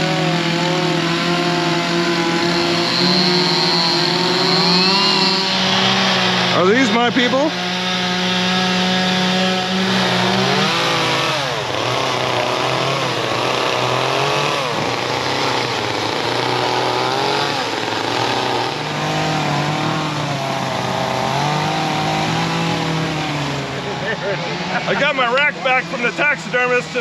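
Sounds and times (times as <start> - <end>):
chainsaw revving: 0.0 - 27.0.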